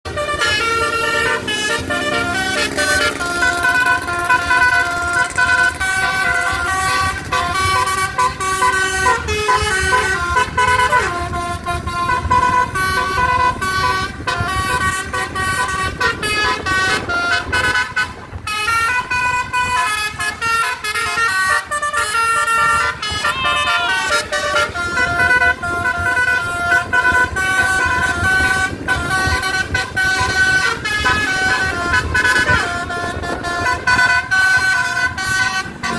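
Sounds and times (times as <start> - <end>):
bus air horn melody: 0.0 - 35.9
low vehicle rumble: 0.0 - 35.9.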